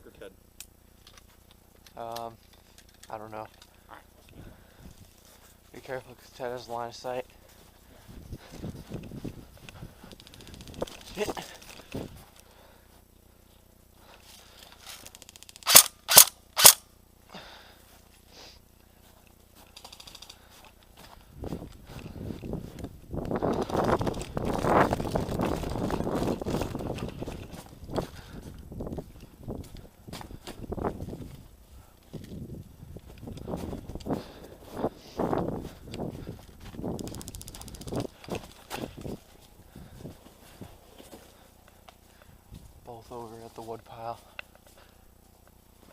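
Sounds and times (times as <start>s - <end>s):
footsteps in snow: 5.0s - 12.4s, 20.4s - 45.9s
airsoft gun shots: 15.6s - 16.9s
faint rapid ticks: 36.9s - 38.3s.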